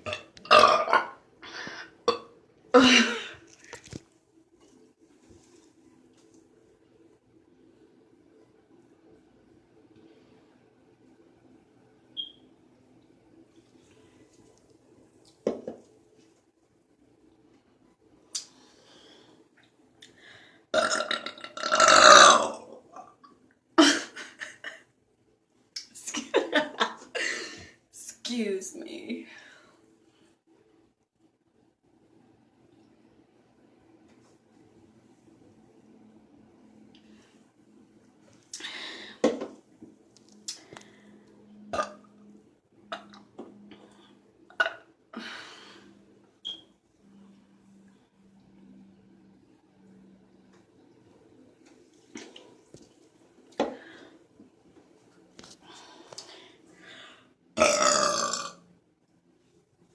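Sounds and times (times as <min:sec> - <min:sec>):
woman burping loudly: 0:00.0 - 0:03.5, 0:20.8 - 0:23.2, 0:41.7 - 0:42.1, 0:44.5 - 0:45.2, 0:57.6 - 0:58.6.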